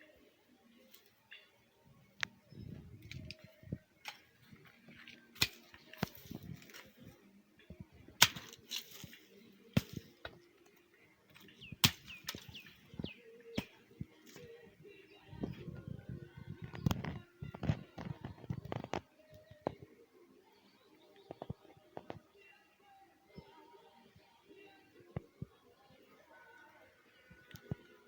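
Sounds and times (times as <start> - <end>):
bird chirps: 11.3 - 13.8.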